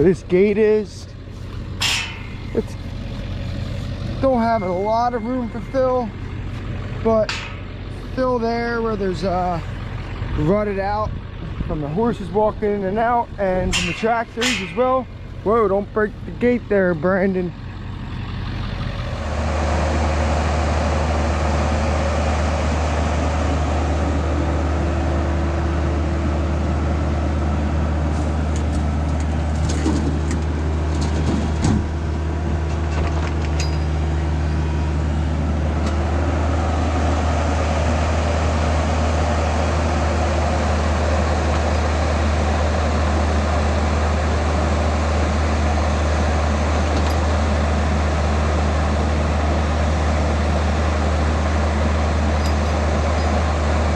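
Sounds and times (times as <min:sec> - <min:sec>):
excavator diesel engine running: 0:00.0 - 0:53.9
machine knocks and clanks: 0:01.7 - 0:03.3, 0:07.2 - 0:07.9, 0:13.5 - 0:15.2.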